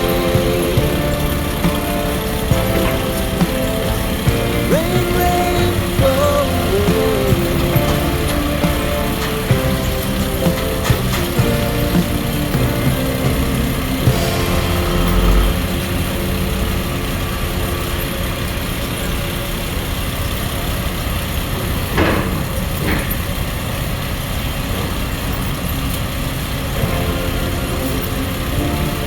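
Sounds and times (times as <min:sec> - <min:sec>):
diesel engine running: 0:00.0 - 0:21.5.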